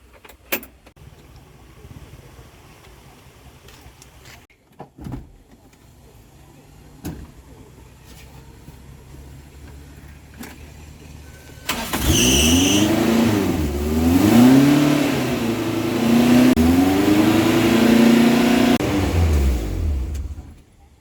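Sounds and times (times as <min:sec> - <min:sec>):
truck engine starting and revving: 0:10.8 - 0:20.6.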